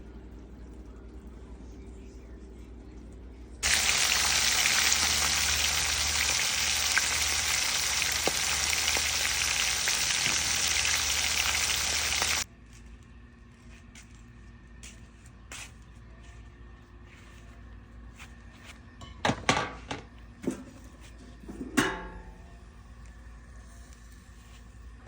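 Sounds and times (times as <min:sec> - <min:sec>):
faint low hum: 0:00.0 - 0:19.0
food sizzling in hot fat: 0:03.6 - 0:12.4.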